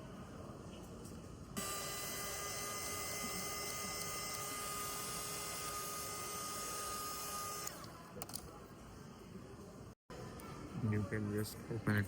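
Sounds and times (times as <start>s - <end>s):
hot-air blower motor whine: 1.6s - 7.8s.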